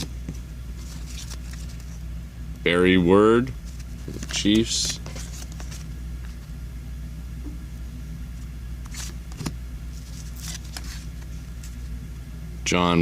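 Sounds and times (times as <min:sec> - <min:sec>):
cards rustling: 0:00.0 - 0:02.0, 0:03.5 - 0:06.5, 0:08.4 - 0:12.0
low background hum: 0:00.0 - 0:13.0.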